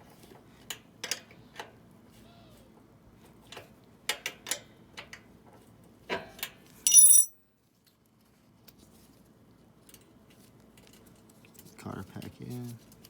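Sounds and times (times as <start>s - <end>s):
bright metal ring: 6.9s - 7.3s.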